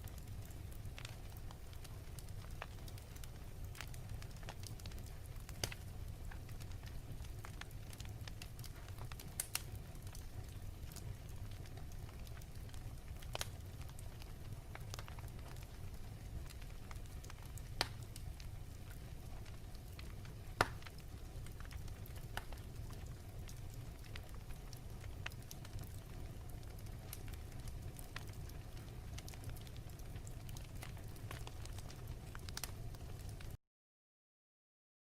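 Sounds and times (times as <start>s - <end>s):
fire pops and snaps: 0.0s - 33.6s
wood fire crackling: 0.0s - 33.6s.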